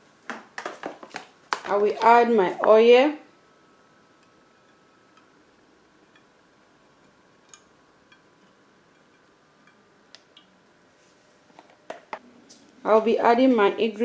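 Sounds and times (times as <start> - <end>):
steady low hum: 1.3 - 14.0.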